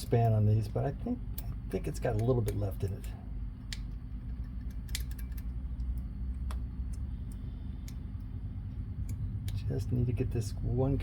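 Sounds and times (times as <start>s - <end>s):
steady low hum: 0.0s - 11.0s
metallic clicks of small parts: 1.3s - 8.3s.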